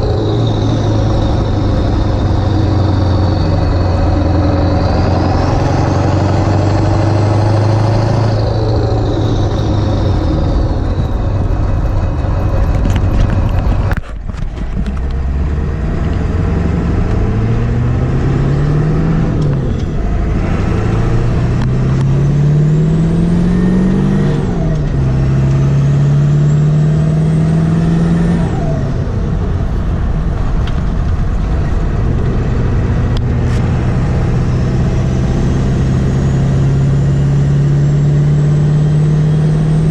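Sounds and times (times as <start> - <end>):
diesel engine pulling under load: 0.0 - 39.9.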